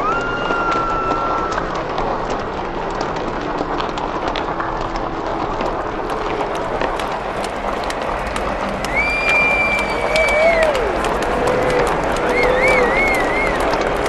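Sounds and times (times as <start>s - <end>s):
hand claps: 0.0s - 14.0s
crowd voices: 5.8s - 14.0s.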